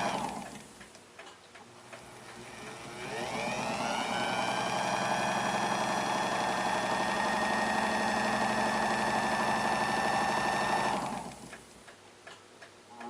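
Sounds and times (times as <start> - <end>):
faint clock ticking: 0.1 - 2.5, 11.2 - 13.0
small electric motor whining: 2.4 - 11.5.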